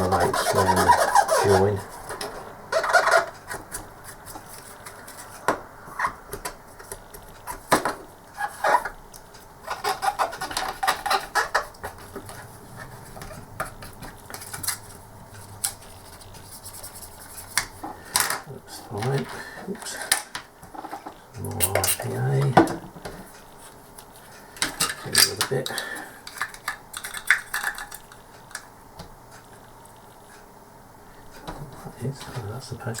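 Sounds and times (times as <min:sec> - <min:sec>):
cotton bud scratchy rubbing on plastic: 0:00.0 - 0:02.0, 0:02.7 - 0:03.4, 0:15.4 - 0:17.8.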